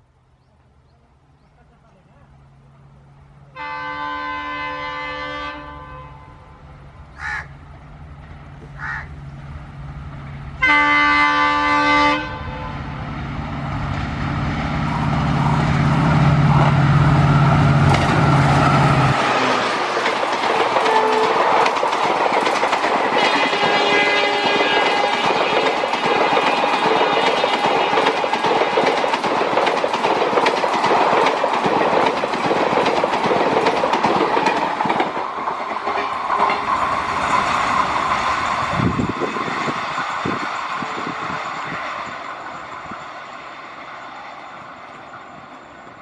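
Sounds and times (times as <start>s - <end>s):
locomotive engine drone: 0.0s - 46.0s
locomotive horn blasts: 3.5s - 6.6s, 10.6s - 12.9s, 20.6s - 21.5s, 23.1s - 28.1s
train wheels clattering on rails: 13.5s - 46.0s.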